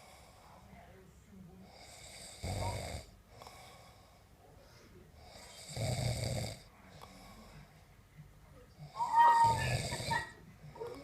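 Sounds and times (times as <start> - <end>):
quiet breathing: 0.0 - 11.0
person snoring: 5.3 - 6.7, 8.9 - 11.0.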